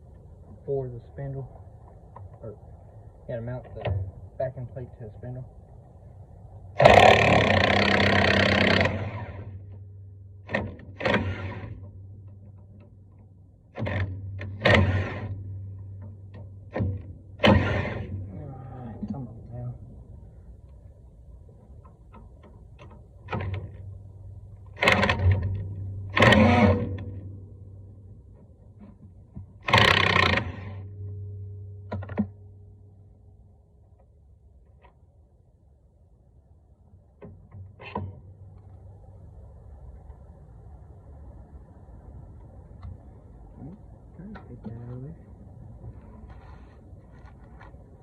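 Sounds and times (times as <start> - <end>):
steady low rumble: 0.0 - 29.7, 30.5 - 48.0
steady low hum: 0.0 - 48.0
hard mechanical rattle: 6.8 - 9.6, 10.4 - 12.9, 13.7 - 18.3, 24.7 - 27.2, 29.6 - 30.9.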